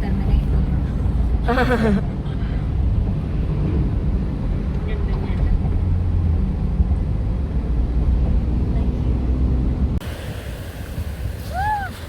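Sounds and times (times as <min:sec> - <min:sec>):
car driving rumble: 0:00.0 - 0:12.0
wind: 0:00.0 - 0:12.0
surf hissing: 0:10.0 - 0:12.0.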